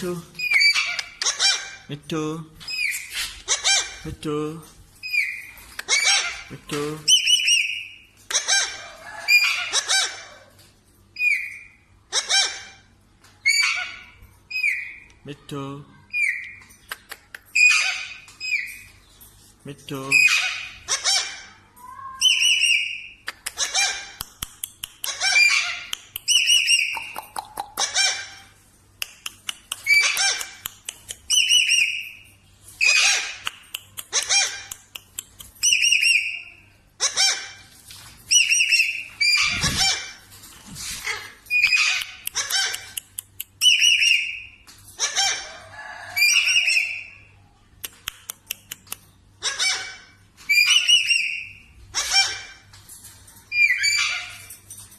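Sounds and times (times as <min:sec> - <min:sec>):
parrot squawking: 0:00.4 - 0:01.9, 0:02.7 - 0:04.1, 0:05.0 - 0:10.5, 0:11.2 - 0:15.1, 0:17.6 - 0:18.8, 0:20.1 - 0:24.2, 0:25.0 - 0:28.6, 0:29.8 - 0:30.7, 0:31.3 - 0:32.2, 0:32.8 - 0:34.9, 0:35.6 - 0:37.7, 0:38.3 - 0:40.3, 0:40.9 - 0:47.3, 0:49.4 - 0:52.6, 0:53.5 - 0:54.6.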